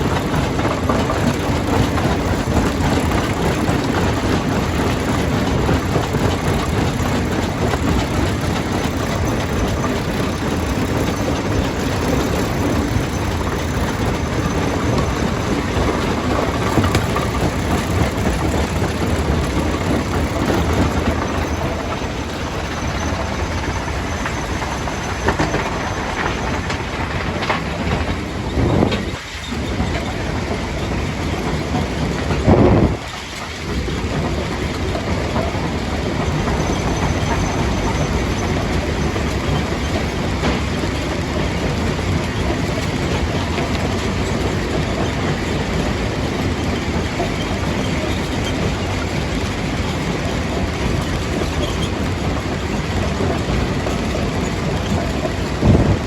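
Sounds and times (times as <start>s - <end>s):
stone crusher running: 0.2s - 27.6s.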